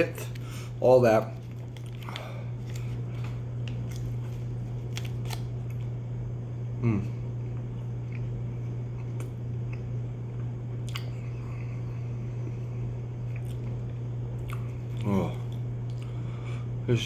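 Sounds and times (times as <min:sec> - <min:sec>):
steady low hum: 0:00.0 - 0:17.0
mouth clicks and smacks: 0:10.8 - 0:11.1.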